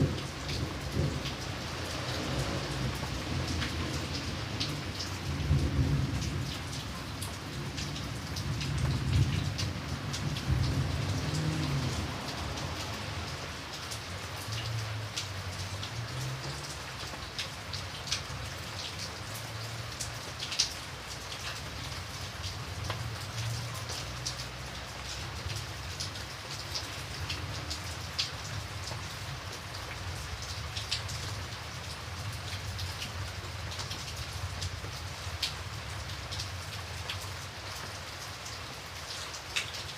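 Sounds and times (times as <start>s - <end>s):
low rumble of thunder: 0.0s - 13.4s
raindrops ticking: 0.0s - 39.9s
steady rain falling: 0.0s - 39.9s.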